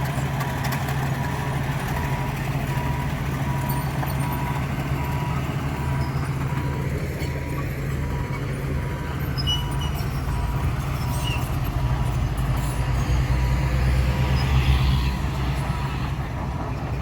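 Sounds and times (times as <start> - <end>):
heavy diesel engines running: 0.0 - 17.0
faint reversing alarm beeping: 1.2 - 11.1.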